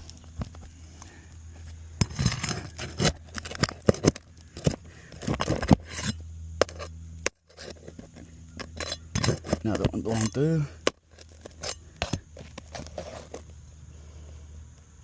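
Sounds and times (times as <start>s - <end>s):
low steady hum: 0.0s - 15.0s
tool scraping roof shingles: 2.0s - 13.5s.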